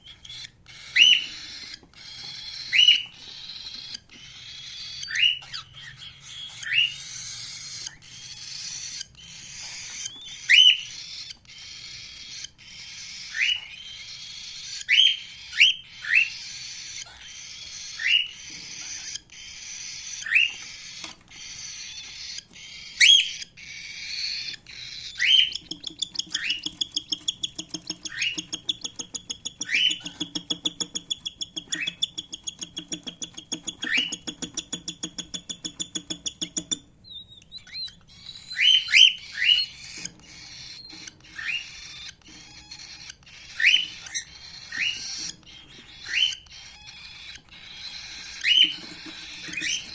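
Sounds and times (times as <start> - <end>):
cockatiel chirping: 0.0 - 49.9.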